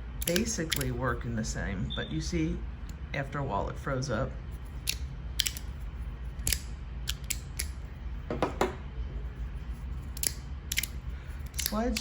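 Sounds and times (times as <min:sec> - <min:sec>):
fidget sliders clicking: 0:00.2 - 0:01.0, 0:04.8 - 0:05.7, 0:06.4 - 0:07.8, 0:10.1 - 0:12.0.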